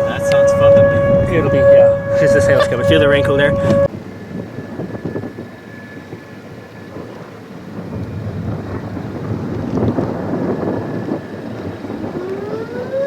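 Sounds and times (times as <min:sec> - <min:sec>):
faint steady siren tone: 0:00.0 - 0:13.0
wind: 0:00.0 - 0:13.0
rumbling thunder: 0:07.0 - 0:13.0.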